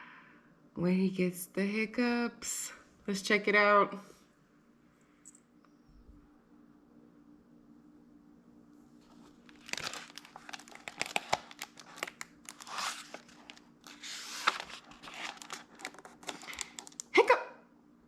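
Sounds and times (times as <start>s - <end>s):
book pages rustling: 9.0s - 17.0s.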